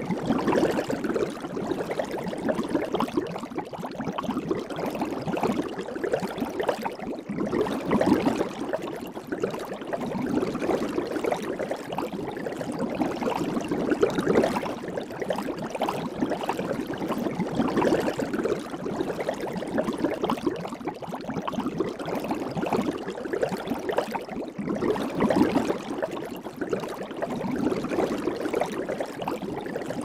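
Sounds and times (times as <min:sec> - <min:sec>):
soapy foam bubbling: 0:00.0 - 0:30.0.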